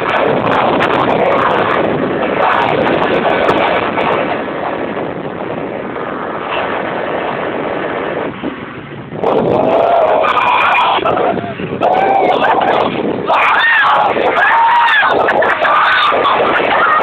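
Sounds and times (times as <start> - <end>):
motorboat engine and water rush: 0.0 - 17.0.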